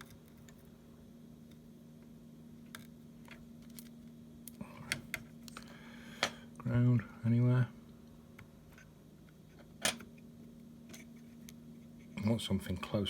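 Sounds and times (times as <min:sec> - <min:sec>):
low electrical hum: 0:00.0 - 0:13.0.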